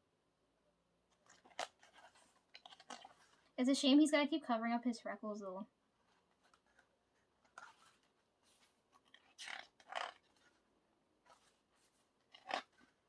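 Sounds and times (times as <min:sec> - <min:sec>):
paper pages rustling: 0:01.1 - 0:03.6, 0:06.0 - 0:13.0.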